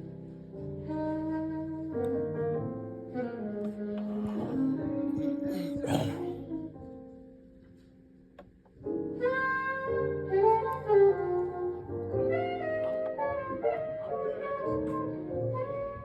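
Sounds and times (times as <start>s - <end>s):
bass and keyboard: 0.0s - 16.0s
saxophone long notes: 0.8s - 6.8s.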